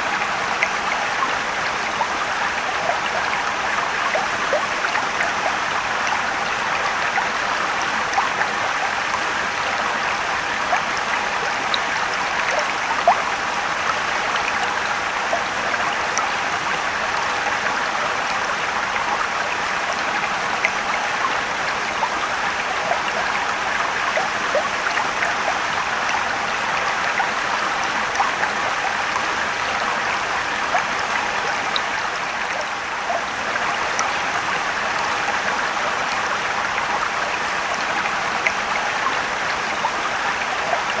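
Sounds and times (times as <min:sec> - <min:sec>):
rushing stream water: 0:00.0 - 0:41.0
water splashes and drips: 0:00.0 - 0:41.0.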